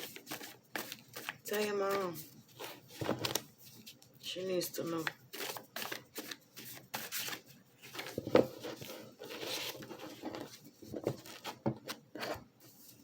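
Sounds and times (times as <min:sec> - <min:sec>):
cards rustling and shuffling: 0:00.0 - 0:13.0.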